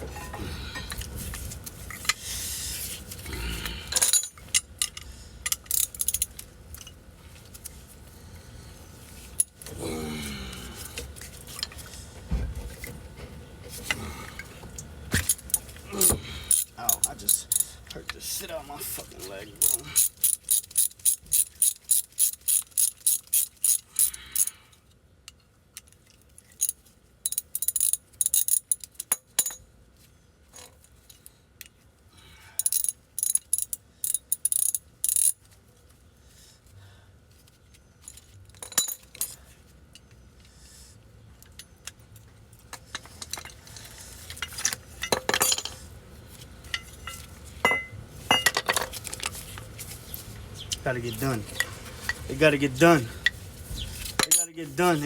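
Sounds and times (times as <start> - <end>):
metal tools clinking and knocking: 0.0 - 1.1, 3.9 - 7.0, 15.2 - 18.3, 19.0 - 24.5, 25.9 - 29.6, 32.6 - 35.4, 38.0 - 39.4, 42.7 - 45.8, 46.7 - 49.4, 54.1 - 55.0
ratchet wrench clicking: 4.0 - 6.4, 16.5 - 17.7, 19.6 - 24.5, 27.3 - 29.2, 32.6 - 35.4.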